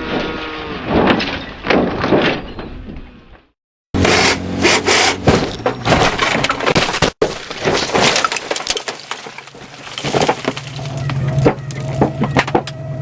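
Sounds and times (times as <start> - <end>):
clatter of cracking impacts: 5.3 - 12.7.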